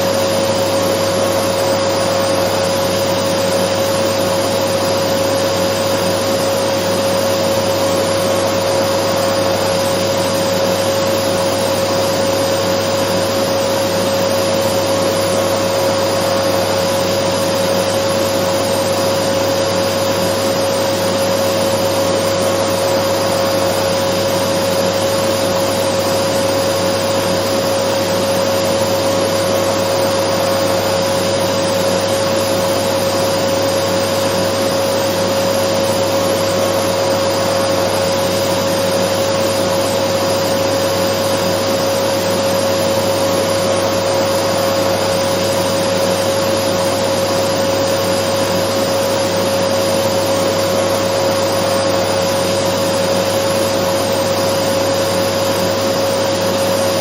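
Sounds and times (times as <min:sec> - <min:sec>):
vacuum cleaner running: 0:00.0 - 0:57.0.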